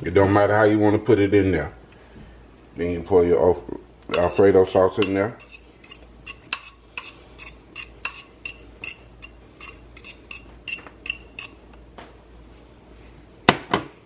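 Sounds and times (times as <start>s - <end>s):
metal utensil clinking against pot: 4.1s - 11.8s.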